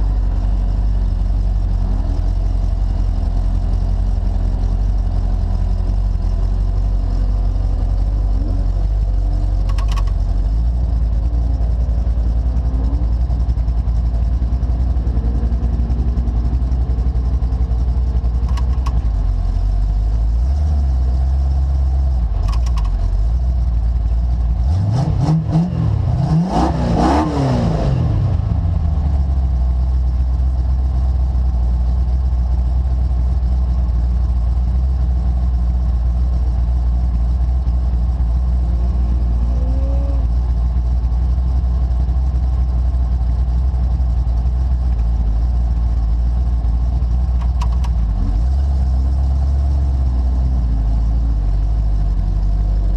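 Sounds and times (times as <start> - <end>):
off-road vehicle engine running: 0.0 - 52.9.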